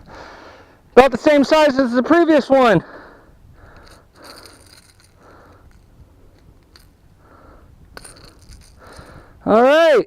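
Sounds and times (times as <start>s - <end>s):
soft handling rustles: 3.7s - 7.2s, 7.8s - 9.2s.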